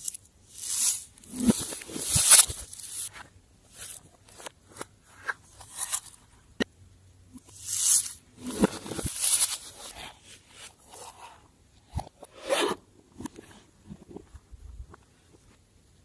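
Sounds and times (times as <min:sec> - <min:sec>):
slime crackling and scraping: 0:00.0 - 0:06.1, 0:07.4 - 0:11.4.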